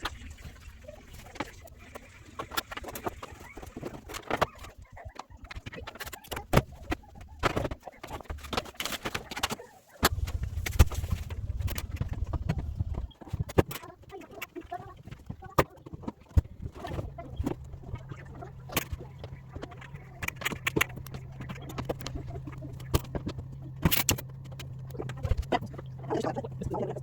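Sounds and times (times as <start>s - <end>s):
clicks and knocks of parts: 2.4s - 25.9s
low rumble: 10.1s - 13.2s.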